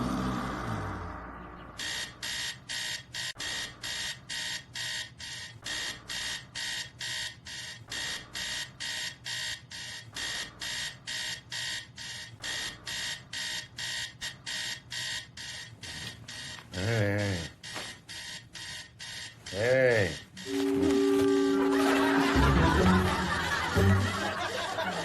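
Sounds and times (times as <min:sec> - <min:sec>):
alarm clock beeping: 0:01.5 - 0:25.0
music: 0:20.5 - 0:24.4.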